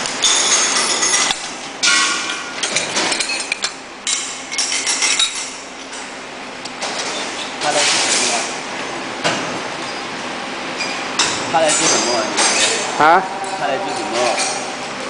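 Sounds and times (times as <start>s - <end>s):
metal clanking and clinking: 0.2s - 5.6s, 10.8s - 14.9s.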